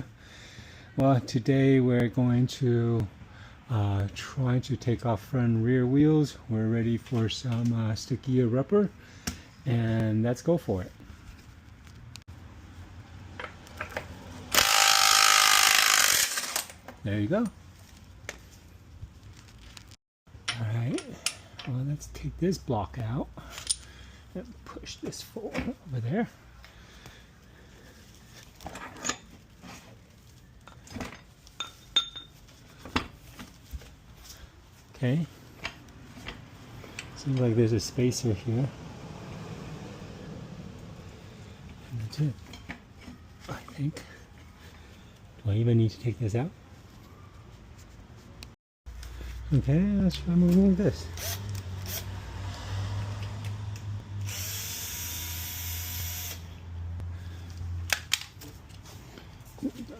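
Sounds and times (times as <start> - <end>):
power tool motor humming: 14.5 - 16.7, 54.2 - 56.5
metal tools clinking: 20.4 - 21.9, 23.4 - 24.0, 28.6 - 29.6, 30.6 - 32.6.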